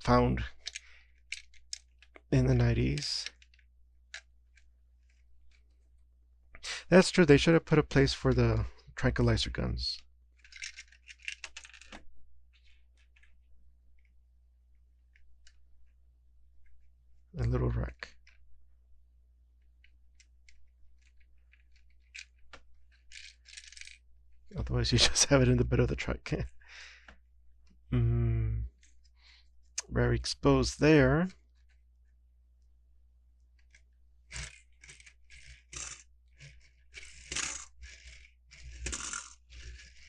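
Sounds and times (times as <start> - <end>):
plastic toy bricks clicking: 0.6 - 2.2, 10.4 - 13.3, 19.8 - 24.0, 33.6 - 40.0
plastic pieces clattering: 10.4 - 13.3.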